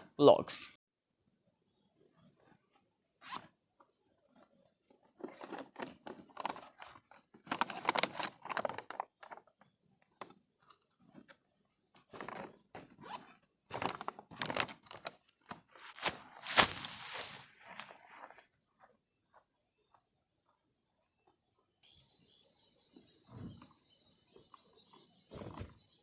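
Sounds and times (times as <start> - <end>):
zipper pulls: 3.2 - 3.6, 13.0 - 14.6
gear rustling and scraping: 4.4 - 9.4.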